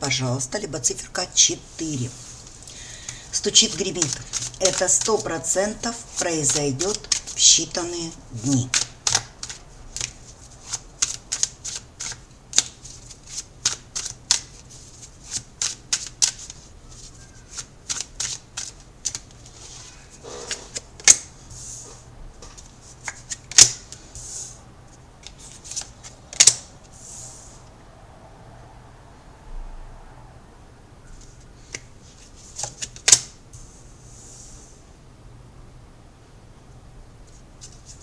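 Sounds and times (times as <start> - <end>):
cards being shuffled: 1.5 - 24.6, 25.2 - 26.7, 31.2 - 33.4, 37.6 - 38.0.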